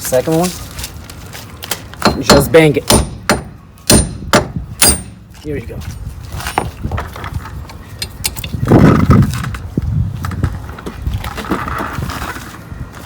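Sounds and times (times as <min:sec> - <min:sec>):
dull rumbling thud: 0:02.0 - 0:05.2
metal tools clicking and knocking: 0:08.0 - 0:08.6.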